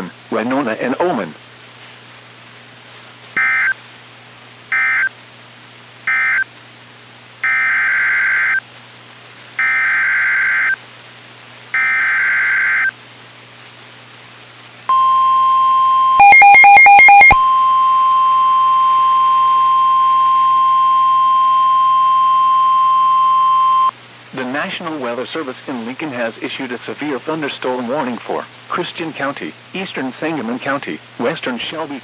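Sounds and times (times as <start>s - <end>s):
weather radio alarm tone: 3.4s - 3.8s, 11.8s - 12.9s, 14.9s - 23.9s
harsh digital data bursts: 16.2s - 17.4s.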